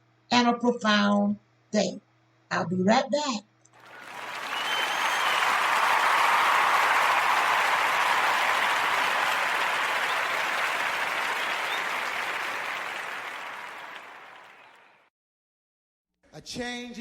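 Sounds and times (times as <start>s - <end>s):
audience applause: 3.8s - 15.1s.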